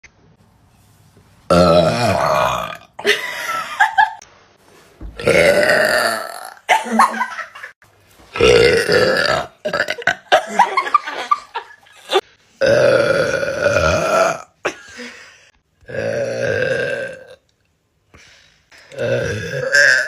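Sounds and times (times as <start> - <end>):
person burping loudly: 1.5 - 3.1, 5.2 - 6.8, 8.3 - 10.6, 12.6 - 14.6, 15.8 - 17.4, 18.8 - 20.0.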